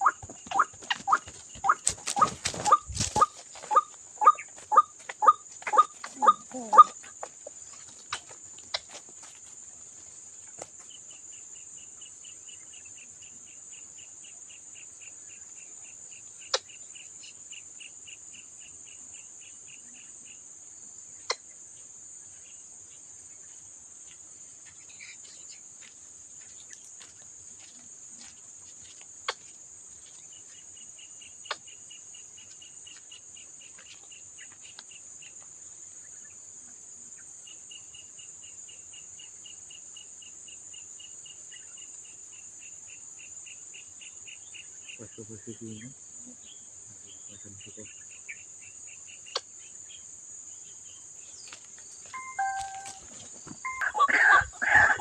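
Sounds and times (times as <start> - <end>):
insect pulsed trill: 0.0 - 7.9, 29.3 - 55.0
insects droning: 0.0 - 55.0.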